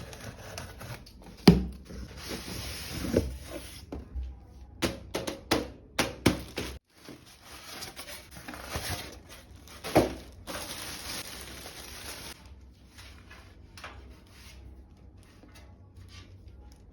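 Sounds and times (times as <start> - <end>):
plastic packaging crinkling: 6.8 - 12.5.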